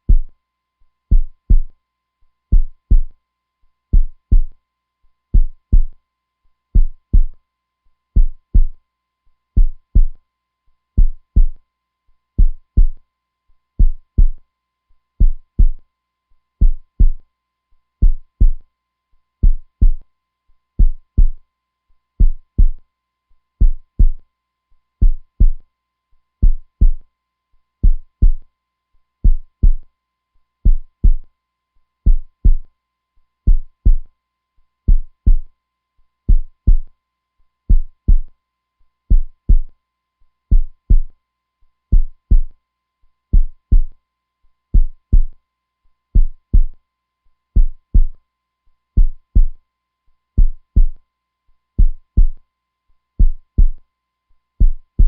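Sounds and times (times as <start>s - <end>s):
heartbeat thumps: 0.1s - 0.3s, 1.1s - 1.7s, 2.5s - 3.1s, 3.9s - 4.5s, 5.4s - 5.9s, 6.8s - 7.4s, 8.2s - 8.8s, 9.6s - 10.2s, 11.0s - 11.6s, 12.4s - 13.0s, 13.8s - 14.4s, 15.2s - 15.8s, 16.6s - 17.2s, 18.0s - 18.6s, 19.4s - 20.0s, 20.8s - 21.4s, 22.2s - 22.8s, 23.6s - 24.2s, 25.0s - 25.6s, 26.4s - 27.0s, 27.8s - 28.4s, 29.2s - 29.8s, 30.7s - 31.2s, 32.1s - 32.6s, 33.5s - 34.1s, 34.9s - 35.5s, 36.3s - 36.9s, 37.7s - 38.3s, 39.1s - 39.7s, 40.5s - 41.1s, 41.9s - 42.5s, 43.4s - 43.9s, 44.8s - 45.3s, 46.2s - 46.8s, 47.6s - 48.2s, 49.0s - 49.6s, 50.4s - 51.0s, 51.8s - 52.4s, 53.2s - 53.8s, 54.6s - 55.0s.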